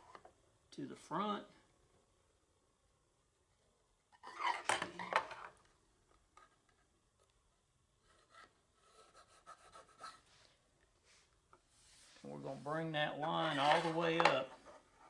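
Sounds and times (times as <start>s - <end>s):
pencil scratching: 8.0s - 10.3s.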